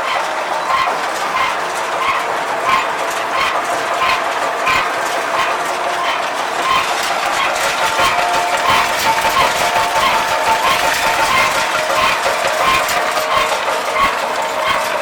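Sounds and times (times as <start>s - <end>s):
round baler mechanical clatter: 0.0s - 15.0s.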